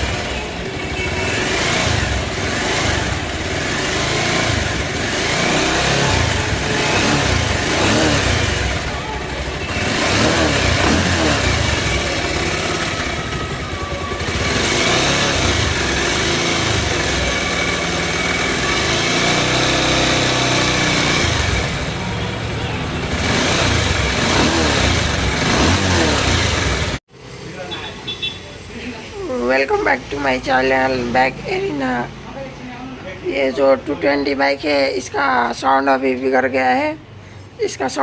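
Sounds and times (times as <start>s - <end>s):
motorcycle engine revving: 0.0s - 28.8s.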